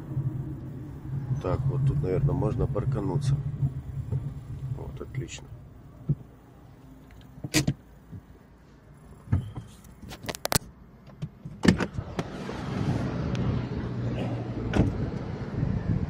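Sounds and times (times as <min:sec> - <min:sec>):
low hum: 0:00.0 - 0:09.6, 0:12.0 - 0:16.0
rush of outside noise: 0:00.0 - 0:16.0
clicks and knocks inside car: 0:09.2 - 0:10.1, 0:11.0 - 0:12.2.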